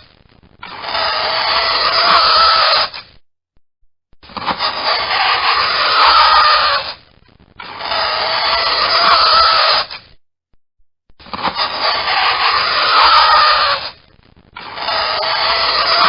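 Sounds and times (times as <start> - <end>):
fingernails scratching a chalkboard: 4.3 - 6.9, 11.3 - 13.6.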